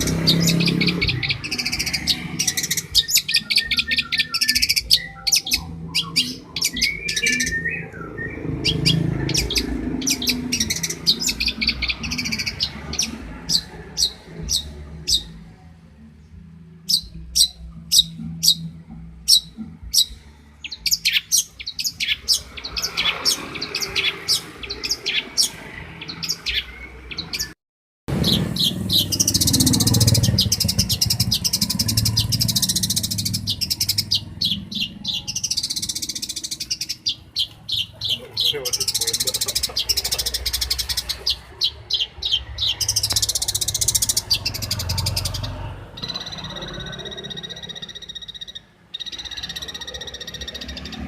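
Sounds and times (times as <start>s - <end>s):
bird chips and trills: 0.0s - 15.4s, 16.8s - 51.0s.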